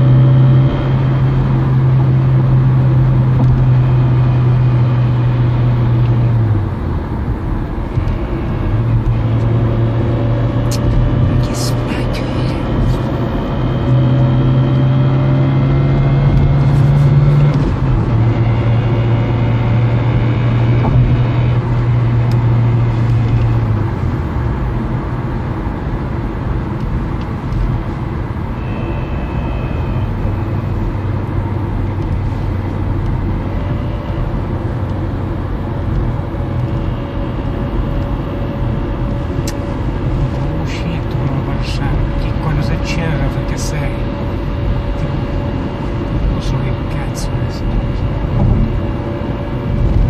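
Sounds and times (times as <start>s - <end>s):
car engine and gearbox droning: 0.0s - 50.0s.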